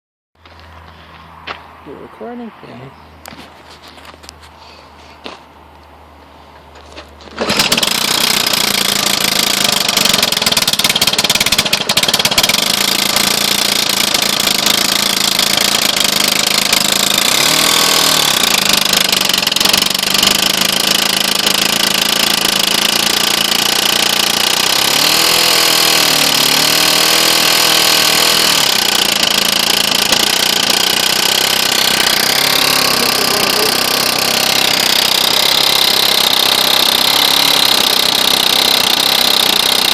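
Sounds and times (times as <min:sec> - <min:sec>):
mower engine running: 0:07.2 - 0:39.9.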